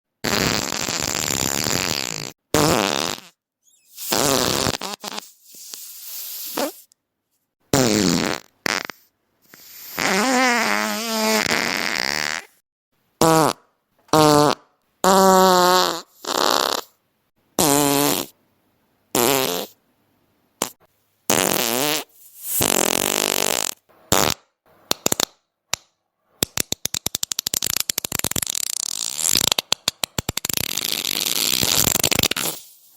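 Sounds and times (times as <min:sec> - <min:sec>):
fart sound effects: 0:00.2 - 0:05.8, 0:07.7 - 0:12.6, 0:13.2 - 0:17.0, 0:17.6 - 0:18.3, 0:19.2 - 0:19.8, 0:20.6 - 0:24.5, 0:27.1 - 0:32.9.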